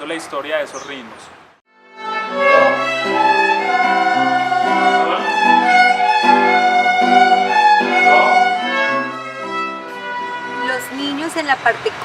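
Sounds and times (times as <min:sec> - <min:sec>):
bowed strings playing: 0:01.8 - 0:11.3.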